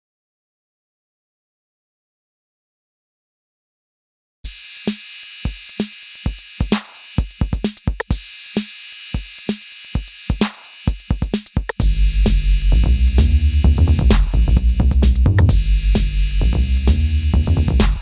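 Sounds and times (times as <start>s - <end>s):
drum machine beat: 4.5s - 18.0s
heavy bass: 11.8s - 18.0s
synth chords: 11.8s - 18.0s.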